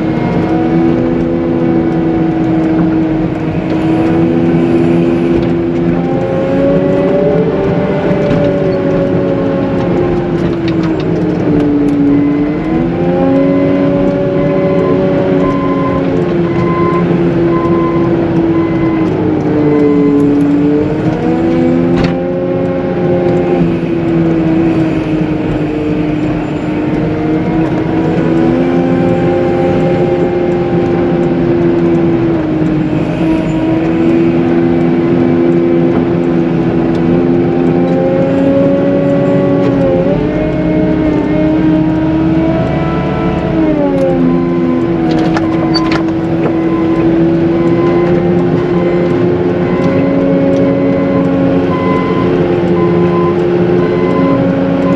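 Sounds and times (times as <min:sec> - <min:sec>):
loader diesel engine working hard: 0:00.0 - 0:54.9
regular beeping: 0:11.7 - 0:22.7, 0:44.5 - 0:54.9.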